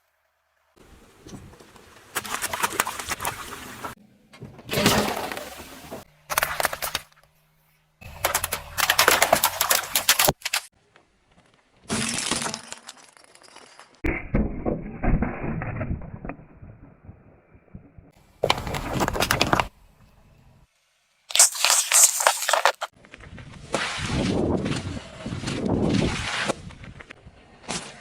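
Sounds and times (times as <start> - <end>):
tyres crushing brittle objects: 8.0 - 10.8, 18.4 - 19.7, 21.3 - 23.0.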